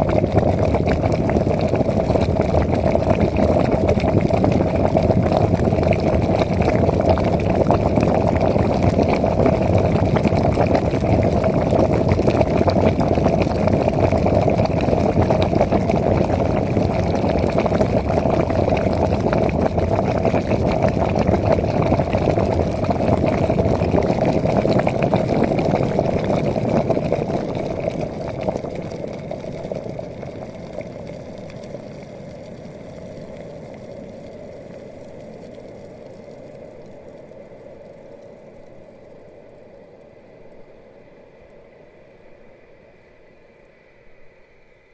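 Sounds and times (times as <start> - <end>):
kettle water boiling: 0.0 - 37.0.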